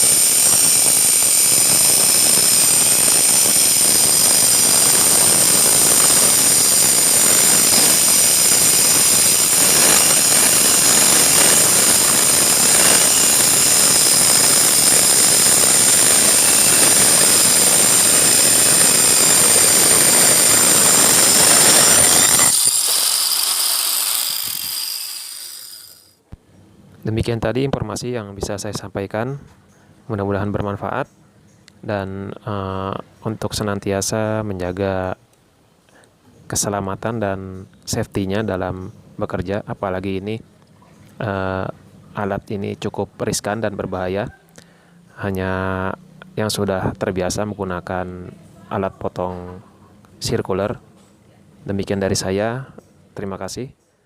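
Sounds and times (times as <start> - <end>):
angle grinder cutting plywood: 0.0 - 26.2
motor whine winding down: 0.0 - 26.2.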